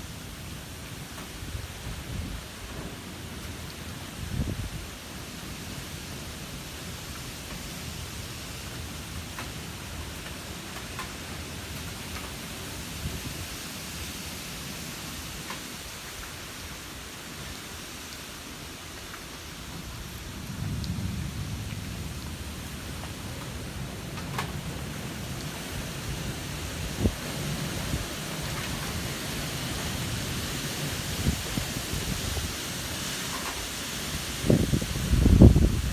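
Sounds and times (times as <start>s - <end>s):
gusty wind rumble: 4.2s - 5.0s, 20.5s - 35.9s.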